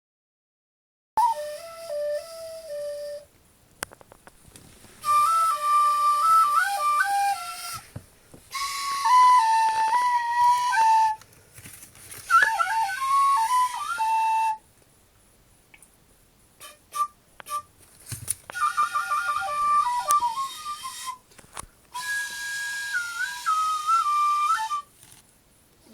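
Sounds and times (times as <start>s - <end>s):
tin whistle playing: 1.2s - 3.3s, 5.0s - 7.9s, 8.5s - 11.2s, 12.2s - 14.7s, 16.6s - 17.8s, 18.5s - 21.3s, 21.9s - 24.9s.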